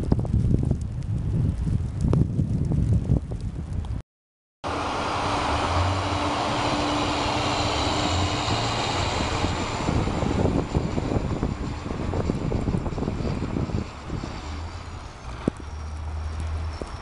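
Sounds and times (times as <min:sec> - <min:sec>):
wind noise: 0:00.0 - 0:04.0, 0:04.7 - 0:17.0
vehicle engine droning: 0:04.6 - 0:17.0.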